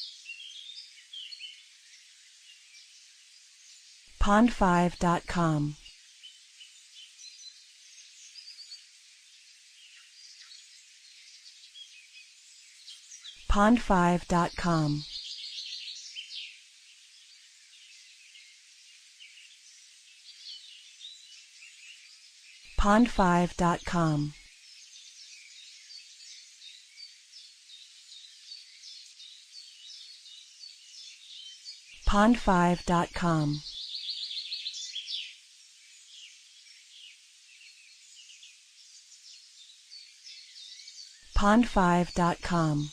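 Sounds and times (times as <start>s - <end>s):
faint steady hiss: 0.0s - 42.9s
birds chirping: 3.8s - 5.8s, 19.2s - 42.9s.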